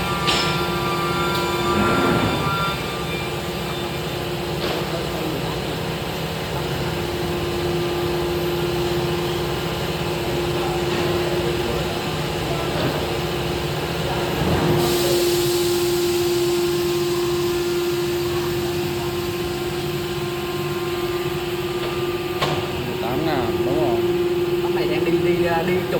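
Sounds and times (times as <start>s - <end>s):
router spindle whine: 0.0s - 4.4s
low machine rumble: 0.0s - 14.8s.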